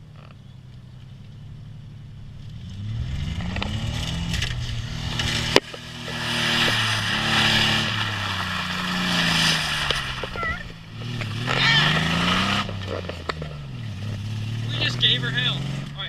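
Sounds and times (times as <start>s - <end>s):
car engine revving hard: 2.6s - 16.0s
tyres hissing on wet road: 6.0s - 10.4s.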